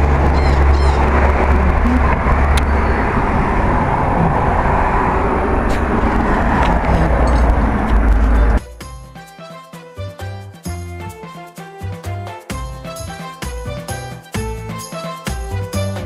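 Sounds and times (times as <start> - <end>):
vehicle engine rumbling: 0.0 - 8.7
music: 8.1 - 16.0.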